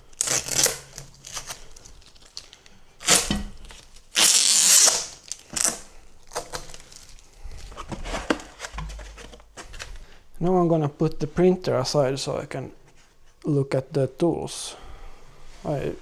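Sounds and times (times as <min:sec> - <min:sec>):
packaging tearing and rustling: 0:00.0 - 0:10.0.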